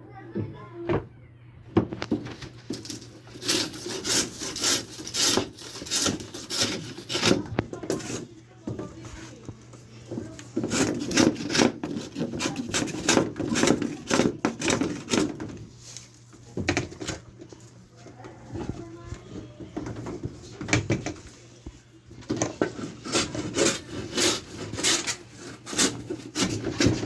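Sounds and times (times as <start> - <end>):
hand tool rasping on wood: 2.8 - 8.2, 10.5 - 15.3, 22.6 - 27.0.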